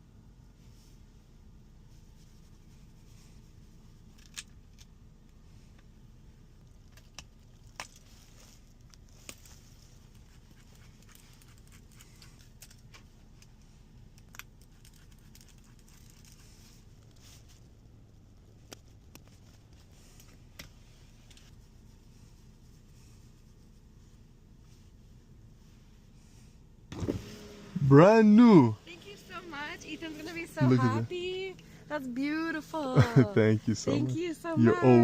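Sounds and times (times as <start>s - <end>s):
low steady hum: 0.0s - 35.0s
handling and rustling noises: 6.6s - 26.1s.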